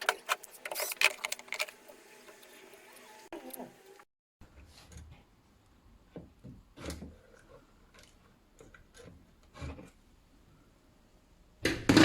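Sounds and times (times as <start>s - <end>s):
pressure cooker parts scraping and knocking: 0.0s - 1.9s, 6.2s - 10.0s.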